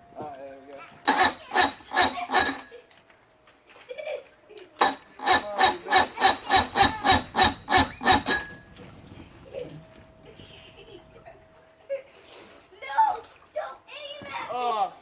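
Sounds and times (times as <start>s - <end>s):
electric starter cranking outboard engine: 1.0s - 3.0s, 4.8s - 10.9s.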